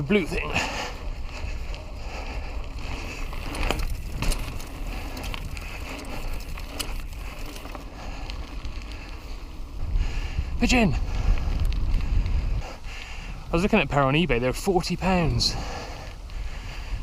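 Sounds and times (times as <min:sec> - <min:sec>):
bike clicks and rattles: 0:00.0 - 0:17.0
tyres rumbling on trail: 0:00.0 - 0:17.0
wind on microphone: 0:00.5 - 0:13.8.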